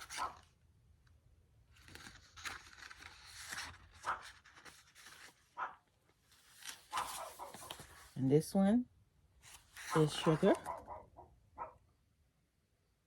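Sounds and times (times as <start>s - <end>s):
paper crinkles: 0.0s - 0.5s, 1.7s - 5.6s, 6.3s - 8.1s, 9.5s - 10.8s
paper pages rustling: 0.0s - 0.5s, 1.7s - 8.2s, 9.4s - 10.8s.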